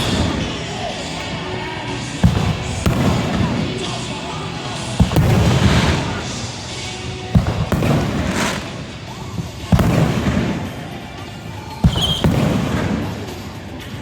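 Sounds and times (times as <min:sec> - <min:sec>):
fireworks booming: 0:00.0 - 0:14.0
music: 0:00.0 - 0:14.0
voices: 0:00.0 - 0:14.0.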